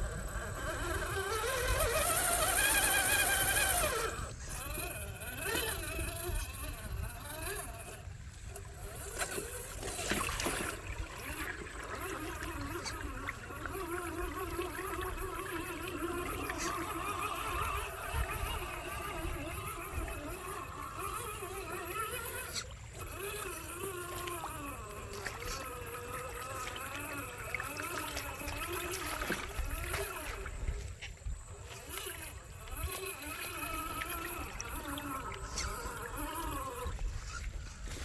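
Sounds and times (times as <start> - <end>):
toy car motor whining: 0.0 - 38.0
water splashing and gurgling: 0.2 - 38.0.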